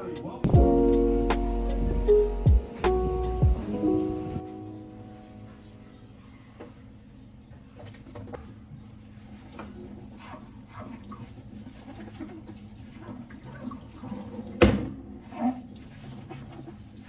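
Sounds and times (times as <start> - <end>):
steady low hum: 0.4 - 5.9.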